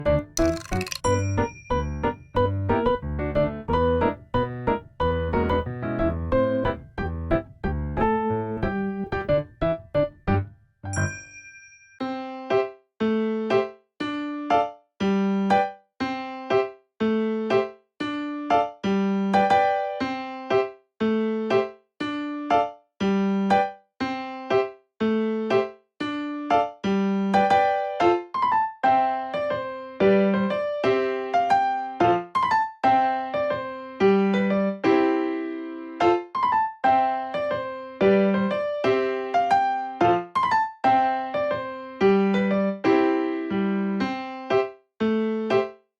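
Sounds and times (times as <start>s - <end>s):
bouncy piano tune: 0.0s - 11.3s, 36.0s - 45.7s.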